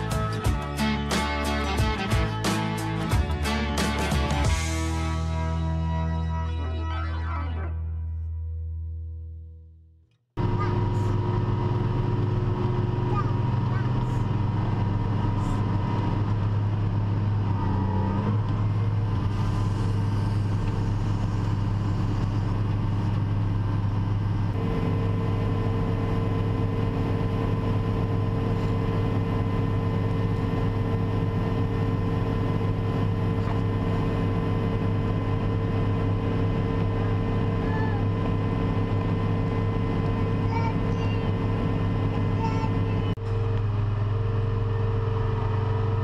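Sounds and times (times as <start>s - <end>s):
farm machine engine drone: 10.4s - 46.0s
higher steady hum: 10.4s - 46.0s.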